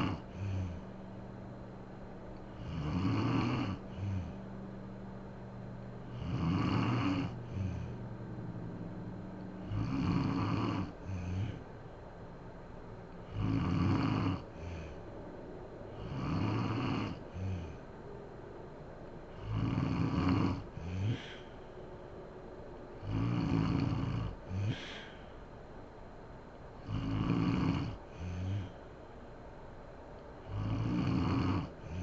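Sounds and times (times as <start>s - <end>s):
woman snoring: 0.0s - 0.9s, 2.4s - 4.4s, 6.1s - 8.0s, 9.6s - 11.7s, 13.2s - 15.0s, 15.9s - 17.8s, 19.4s - 21.5s, 23.0s - 25.2s, 26.8s - 28.8s, 30.4s - 32.0s
soft breath: 0.0s - 2.7s, 3.7s - 6.2s, 6.8s - 8.6s, 10.4s - 13.4s, 14.4s - 16.2s, 17.1s - 18.7s, 20.5s - 23.1s, 23.9s - 25.9s, 27.8s - 29.3s.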